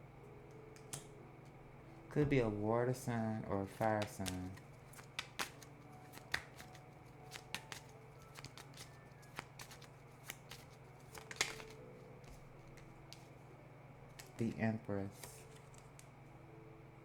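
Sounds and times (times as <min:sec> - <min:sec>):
faint low hum: 0:00.0 - 0:17.0
cards clicking and snapping: 0:00.6 - 0:01.1, 0:03.7 - 0:13.3, 0:14.1 - 0:16.2.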